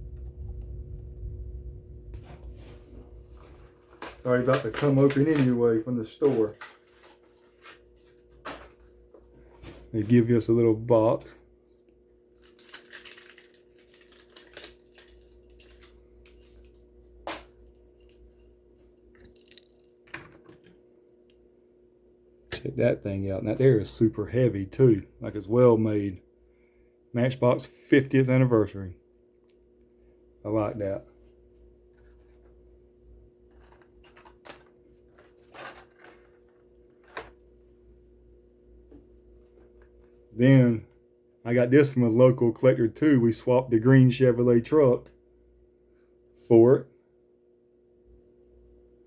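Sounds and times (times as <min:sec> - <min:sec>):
faint steady hum: 0:00.0 - 0:49.0
packaging clicks and rustles: 0:12.3 - 0:16.8, 0:33.5 - 0:37.4.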